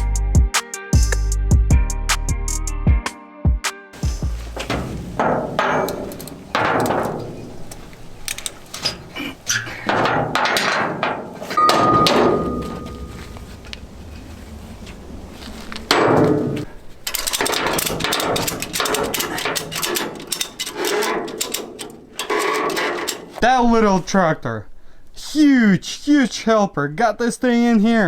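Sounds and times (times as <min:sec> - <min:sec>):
heavy metal bangs: 0:04.0 - 0:23.3
metal knocks and rattles: 0:04.0 - 0:23.4.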